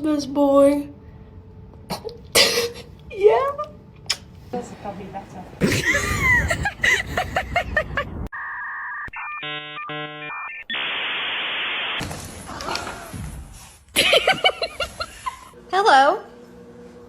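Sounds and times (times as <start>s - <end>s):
static hiss: 10.6s - 12.1s.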